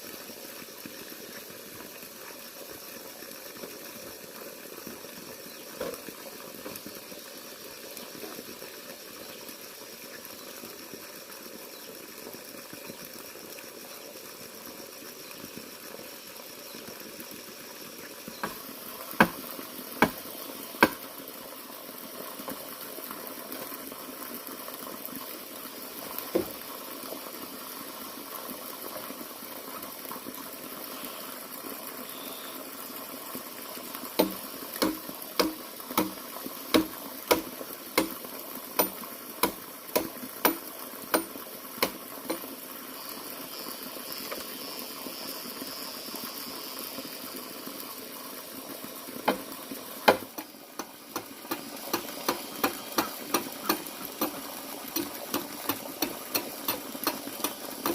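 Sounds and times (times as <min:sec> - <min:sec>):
steady hiss: 0:15.6 - 0:57.9
sharp knocks: 0:34.2 - 0:36.2.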